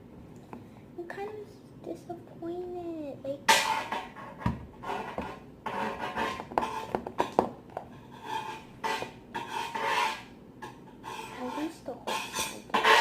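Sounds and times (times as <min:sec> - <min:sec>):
spoon scraping a bowl: 0:03.6 - 0:07.3, 0:07.9 - 0:13.0.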